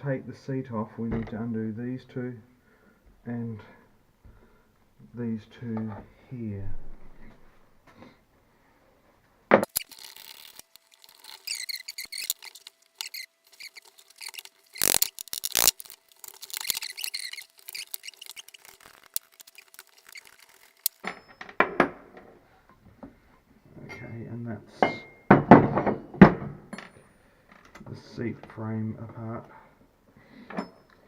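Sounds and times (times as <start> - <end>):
squeaky metal scraping: 9.6 - 21.1.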